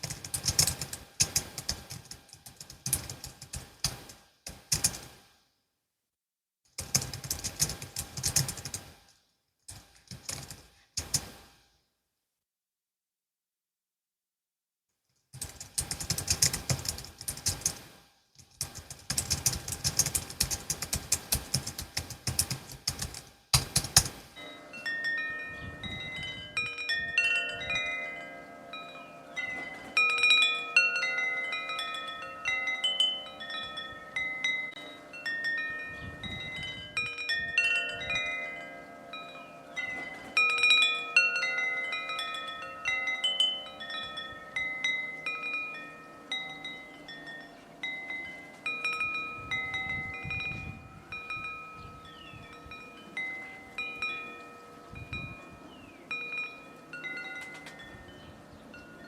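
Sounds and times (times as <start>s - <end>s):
rapid keyboard typing: 0.0s - 5.3s, 6.8s - 9.1s, 9.7s - 11.5s, 15.4s - 24.4s
wind chimes tinkling: 24.3s - 59.0s.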